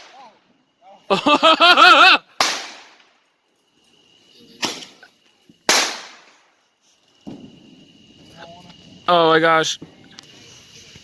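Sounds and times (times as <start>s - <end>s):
firework bangs: 0.0s - 0.3s, 2.3s - 3.2s, 4.5s - 6.6s, 7.2s - 8.1s.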